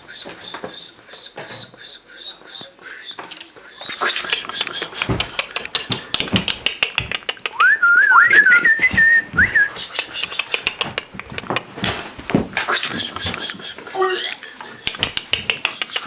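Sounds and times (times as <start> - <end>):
rapid clicks and taps: 2.6 - 7.7, 8.4 - 16.0
warbling whistle: 7.6 - 9.7.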